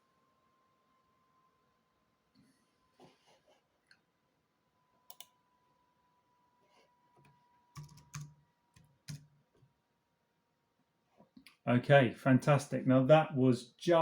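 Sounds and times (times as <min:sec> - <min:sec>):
laptop keystrokes and clicks: 0:05.1 - 0:05.4, 0:07.2 - 0:09.4.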